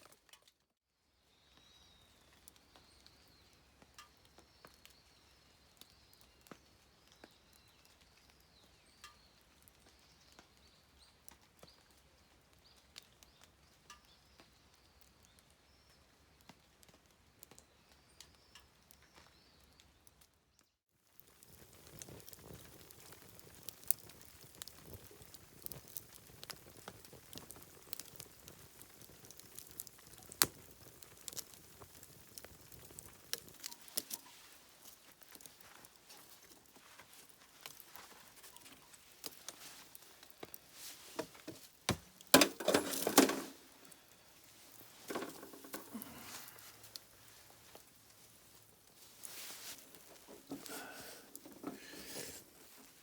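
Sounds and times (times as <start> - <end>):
light clicks and crackles: 0.0 - 0.6, 2.2 - 53.0
clattering rustle: 40.9 - 43.8, 44.8 - 46.3.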